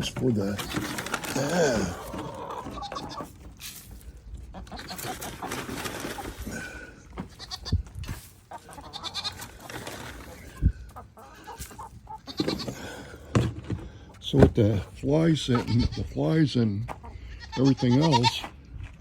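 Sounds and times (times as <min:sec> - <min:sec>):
goats bleating: 0:01.3 - 0:03.4, 0:04.6 - 0:05.2, 0:06.5 - 0:07.8, 0:08.5 - 0:09.6, 0:12.1 - 0:13.1, 0:15.3 - 0:16.2, 0:17.1 - 0:18.5.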